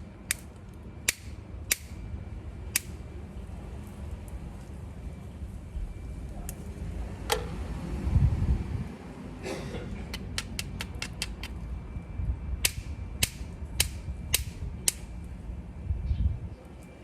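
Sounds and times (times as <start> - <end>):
stone knapping clicks: 10.1 - 11.6, 12.6 - 15.1.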